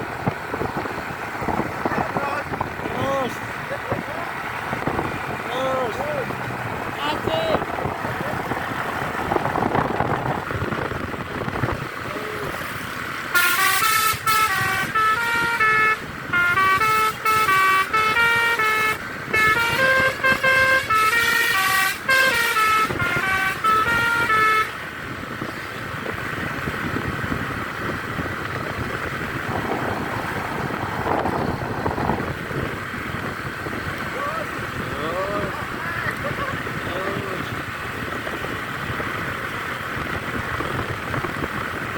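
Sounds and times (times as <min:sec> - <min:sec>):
vehicle and road noise: 0:00.0 - 0:41.9
musical bus horn tune: 0:13.3 - 0:24.9.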